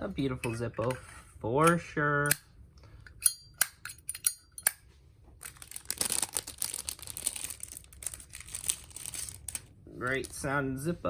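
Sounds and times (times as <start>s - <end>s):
plastic bag crinkling: 5.4s - 10.5s.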